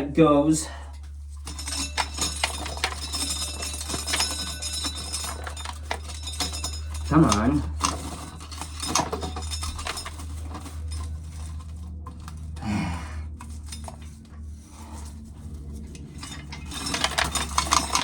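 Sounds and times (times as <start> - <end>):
corn kernels clattering: 16.0 - 18.0.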